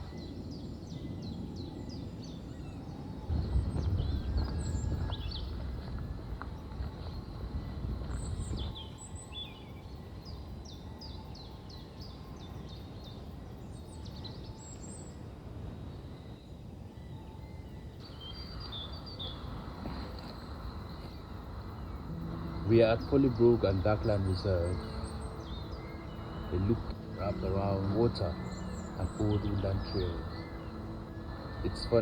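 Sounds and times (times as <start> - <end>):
small birds chirping: 0.0 - 32.0
steady low rumble: 3.2 - 8.8, 18.4 - 32.0.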